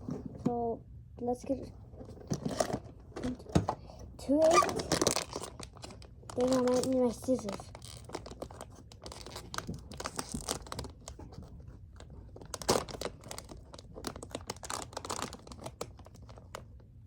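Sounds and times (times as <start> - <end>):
packaging crinkling and tearing: 4.4 - 16.8.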